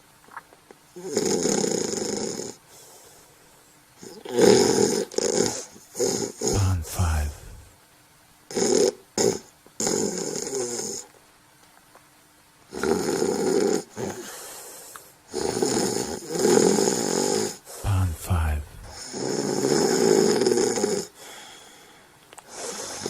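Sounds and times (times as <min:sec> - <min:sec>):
person snoring: 0:06.5 - 0:07.7, 0:17.9 - 0:19.0.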